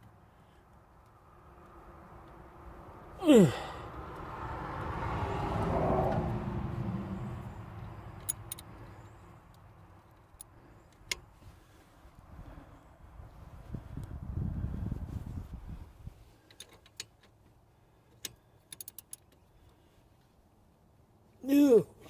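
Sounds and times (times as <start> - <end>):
vehicle passing by: 1.2 - 9.8
sharp metallic clicks: 8.2 - 8.9, 18.1 - 19.4.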